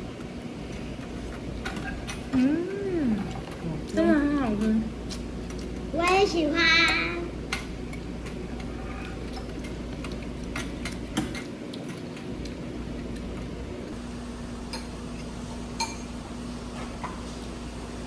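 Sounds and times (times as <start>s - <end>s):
spoons clinking against bowls: 3.2s - 12.3s, 15.8s - 16.2s.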